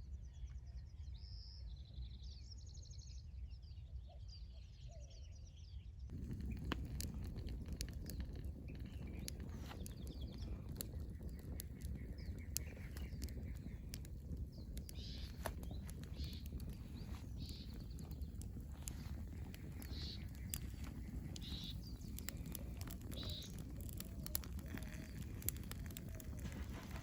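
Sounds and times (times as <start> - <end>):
birds chirping: 6.1 - 27.0
steady low rumble: 6.1 - 27.0.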